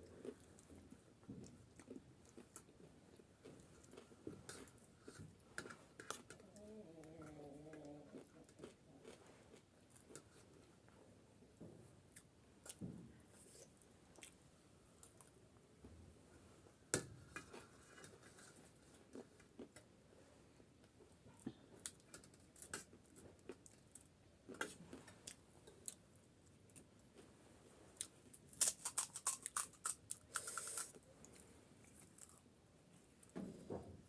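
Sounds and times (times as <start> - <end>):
chewing crisp snack food: 0.0 - 10.7, 20.8 - 27.1, 28.0 - 32.5.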